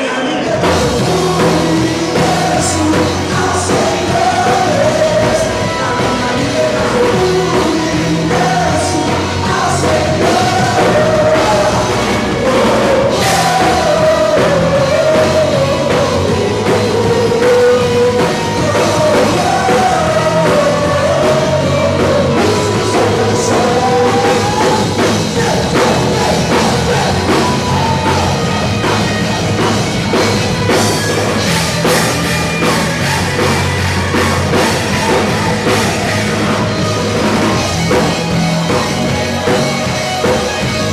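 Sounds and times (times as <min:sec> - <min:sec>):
drums: 0:00.0 - 0:40.9
person singing: 0:00.0 - 0:40.9
rock band playing: 0:00.0 - 0:40.9.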